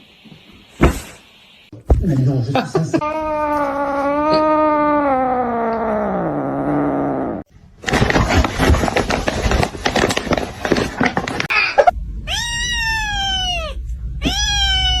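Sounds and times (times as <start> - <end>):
cat meowing: 3.0 - 7.4, 12.3 - 15.0
crackling rustling noise: 7.8 - 11.5.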